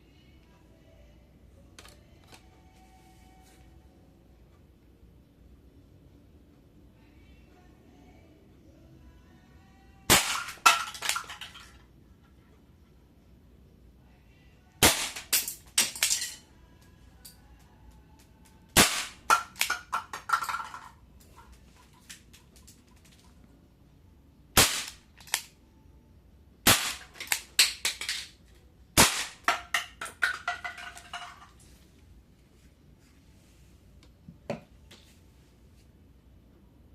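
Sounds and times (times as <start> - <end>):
air revolver shots: 10.1 - 11.3, 14.8 - 16.1, 18.8 - 19.9, 24.6 - 25.5, 26.6 - 28.1, 29.0 - 30.0.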